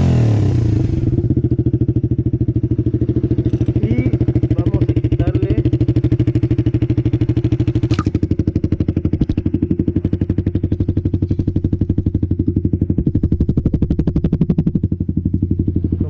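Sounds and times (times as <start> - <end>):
motorcycle engine idling: 0.0 - 16.0
sharp click: 7.8 - 8.2.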